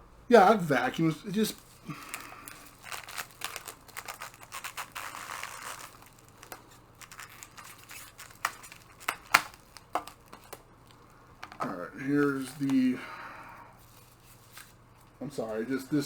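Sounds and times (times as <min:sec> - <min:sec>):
packing peanuts rustling and crinkling: 0:00.5 - 0:13.0.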